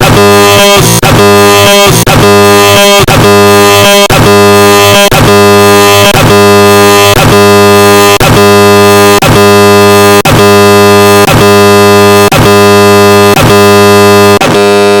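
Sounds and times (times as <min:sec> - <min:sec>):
buzzing synthetic drone: 0:00.0 - 0:15.0.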